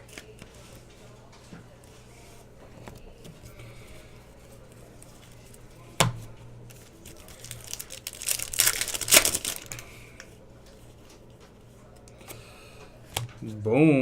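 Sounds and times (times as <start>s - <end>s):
foil pack tearing and crinkling: 7.1s - 9.8s.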